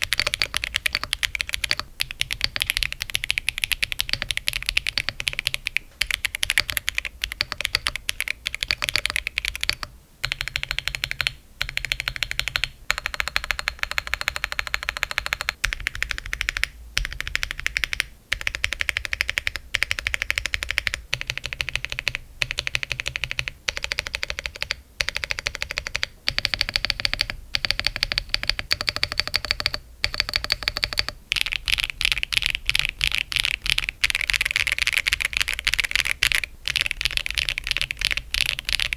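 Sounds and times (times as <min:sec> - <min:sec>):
fast mechanical keyboard typing: 0:00.0 - 0:38.9.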